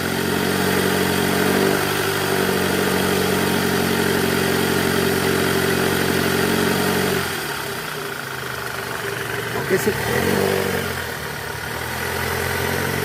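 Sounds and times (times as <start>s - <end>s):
car engine running: 0.0s - 13.0s
drive belt tensioner growl: 8.8s - 11.2s.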